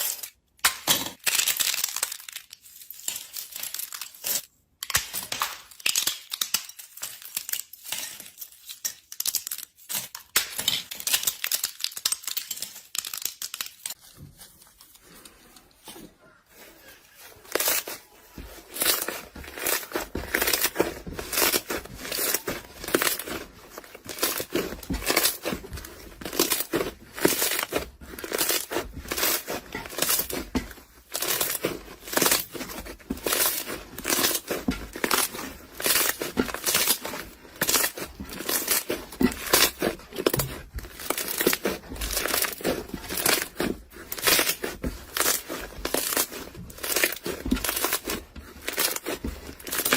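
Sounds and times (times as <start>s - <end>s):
crunchy material being crushed: 16.3s - 49.9s.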